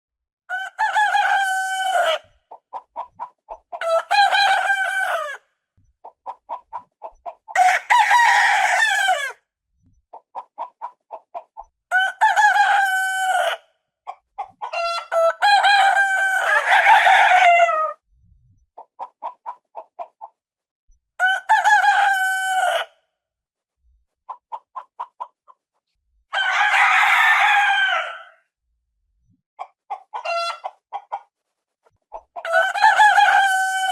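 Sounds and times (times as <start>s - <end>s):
rooster crowing: 0.5s - 2.2s, 3.8s - 5.4s, 7.6s - 9.4s, 11.9s - 13.6s, 14.7s - 18.0s, 21.2s - 22.9s, 26.3s - 28.4s, 32.4s - 33.9s
quick clucks: 2.4s - 3.8s, 5.8s - 7.6s, 9.8s - 11.8s, 14.0s - 14.9s, 18.6s - 20.5s, 24.1s - 25.9s, 29.6s - 32.4s.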